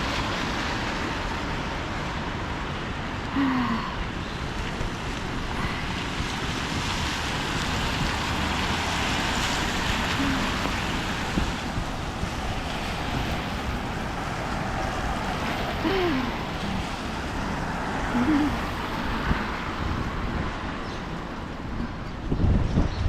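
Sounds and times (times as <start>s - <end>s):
rain and tyres on wet pavement: 0.0s - 23.0s.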